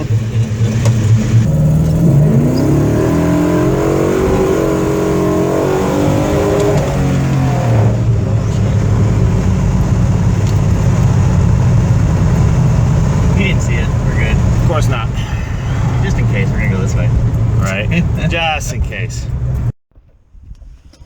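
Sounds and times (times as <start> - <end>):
car engine accelerating hard: 0.0 - 19.7.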